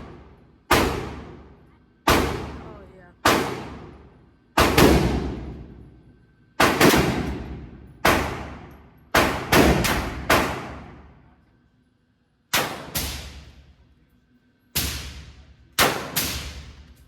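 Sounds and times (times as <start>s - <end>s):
pistol shots echoing: 0.0s - 1.5s, 2.1s - 2.6s, 3.2s - 4.0s, 4.6s - 5.7s, 6.6s - 11.1s, 12.5s - 13.4s, 14.8s - 16.7s.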